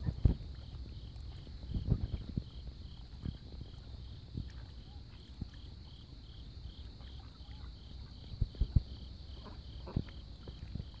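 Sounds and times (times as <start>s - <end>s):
insect chirping: 0.0s - 11.0s.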